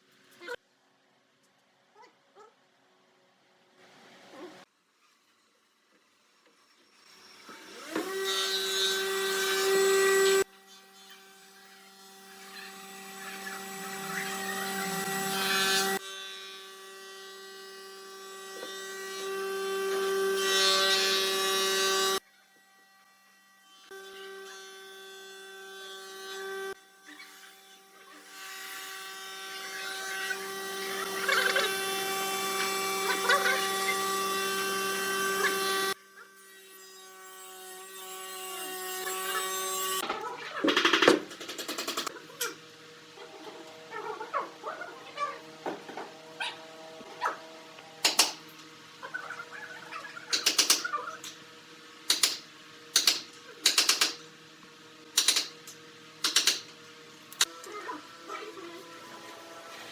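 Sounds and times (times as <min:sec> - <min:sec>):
electric power tool whining: 0:06.4 - 0:16.9, 0:26.2 - 0:36.3.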